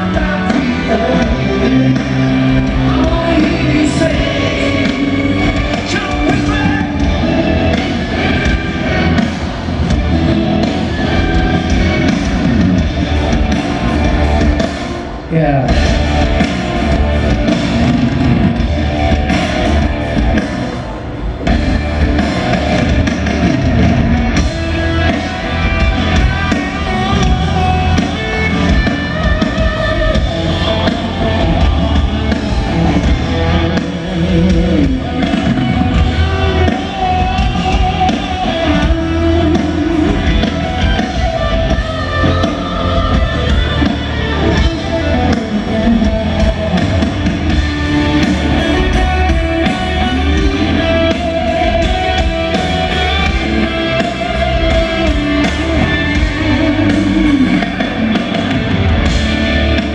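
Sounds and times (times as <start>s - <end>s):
person singing: 0.0s - 8.5s
drum kit: 0.0s - 59.9s
electric guitars: 0.0s - 59.9s.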